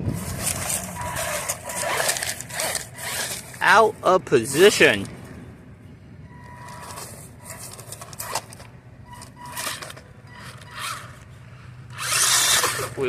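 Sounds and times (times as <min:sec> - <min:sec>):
tyres scraping on concrete: 0:00.0 - 0:03.8, 0:06.6 - 0:11.2, 0:11.9 - 0:13.0
faint motor whine: 0:00.0 - 0:13.0.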